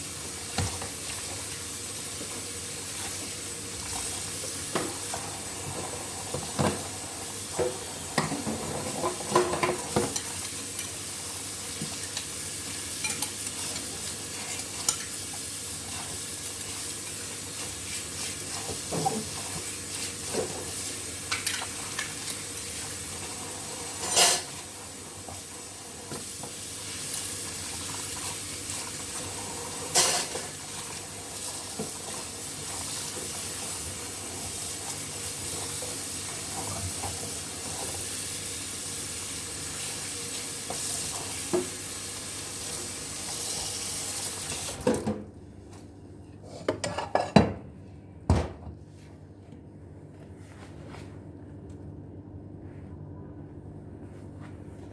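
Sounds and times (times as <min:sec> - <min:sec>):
dishes clattering: 0:07.6 - 0:10.4, 0:24.0 - 0:24.6, 0:29.9 - 0:30.6, 0:46.7 - 0:47.6
dishes and utensils clinking: 0:13.0 - 0:15.1, 0:24.0 - 0:24.6, 0:29.9 - 0:30.5, 0:46.7 - 0:47.6.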